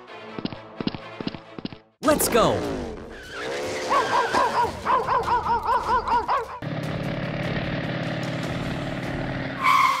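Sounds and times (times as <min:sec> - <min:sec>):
vehicle engine humming: 0:02.2 - 0:10.0.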